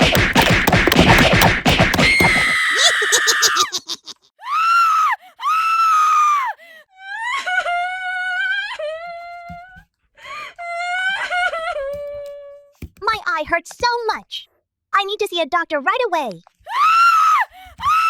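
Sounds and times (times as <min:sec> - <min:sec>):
high-pitched voice crying in pain: 0:02.3 - 0:04.6.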